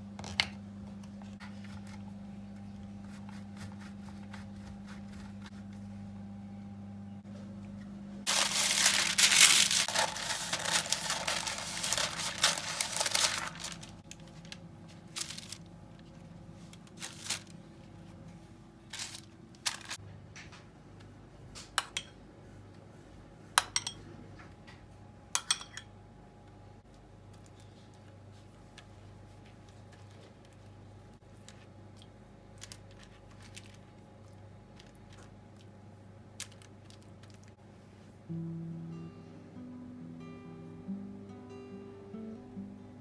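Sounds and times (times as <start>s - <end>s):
loud dense rustling: 8.3s - 14.0s, 15.1s - 15.6s.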